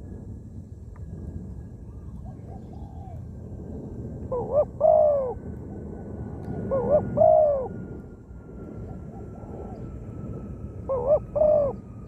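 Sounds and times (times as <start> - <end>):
dove cooing: 1.9 - 3.3, 4.3 - 7.8, 8.8 - 10.1, 10.8 - 12.0.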